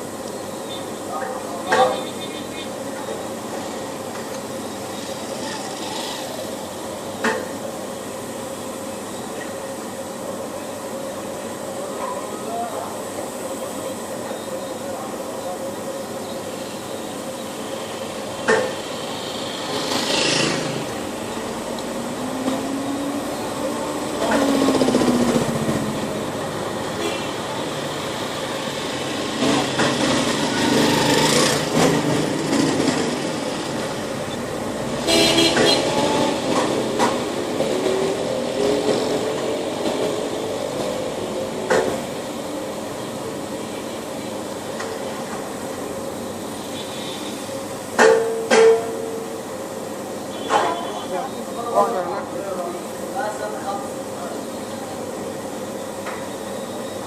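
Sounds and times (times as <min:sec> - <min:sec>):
background traffic: 0:00.0 - 0:57.0
small engines passing: 0:19.0 - 0:41.6.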